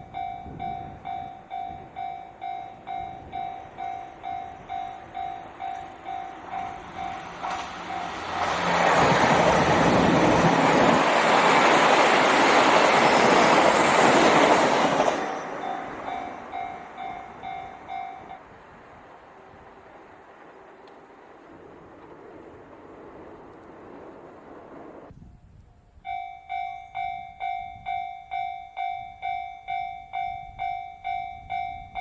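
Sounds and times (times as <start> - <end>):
level crossing warning bell: 0.0 - 8.7, 14.7 - 18.4, 26.0 - 32.0
train wheels on rails: 0.0 - 25.1.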